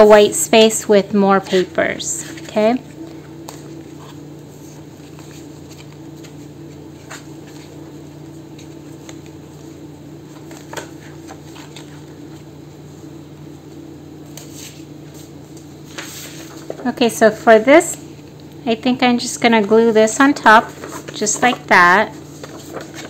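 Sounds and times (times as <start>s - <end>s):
steady low hum: 0.0s - 23.0s
paper rustling: 1.4s - 12.5s, 14.3s - 17.1s, 19.6s - 23.0s.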